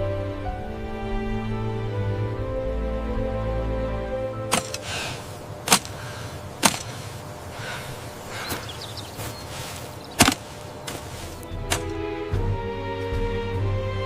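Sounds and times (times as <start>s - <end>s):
sharp short cracks: 4.5s - 8.7s, 10.2s - 12.0s
steady rushing noise: 4.5s - 11.9s.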